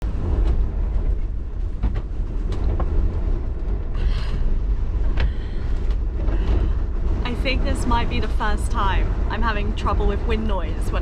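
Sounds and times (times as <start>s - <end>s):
van body knocks and rattles: 0.0s - 7.6s
storm wind buffeting van: 0.0s - 11.0s.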